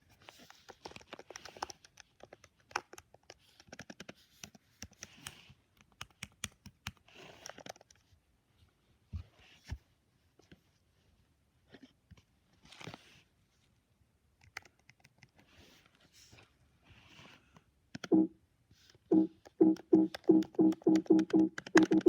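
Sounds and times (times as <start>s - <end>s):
keyboard typing clicks: 18.0s - 18.3s, 19.1s - 22.0s
soft low thumps: 18.1s - 18.3s, 19.1s - 22.0s.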